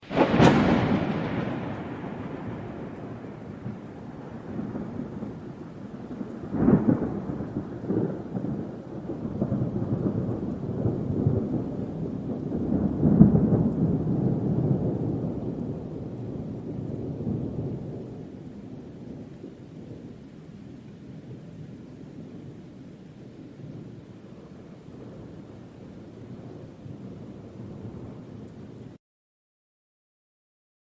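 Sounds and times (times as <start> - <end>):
thunder crack: 0.0 - 5.5, 6.1 - 18.0
rolling thunder rumbles: 0.0 - 20.3, 23.3 - 29.0.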